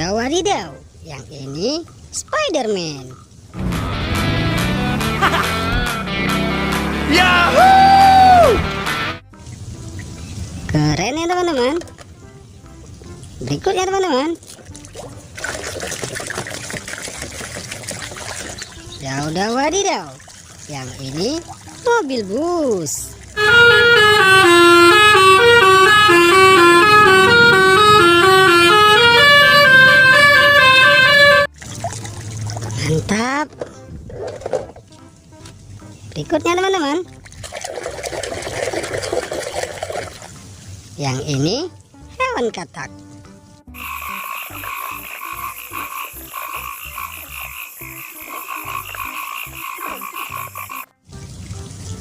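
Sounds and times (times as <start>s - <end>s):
bus musical horn playing a tune: 23.4s - 31.5s
frogs croaking: 43.7s - 50.9s.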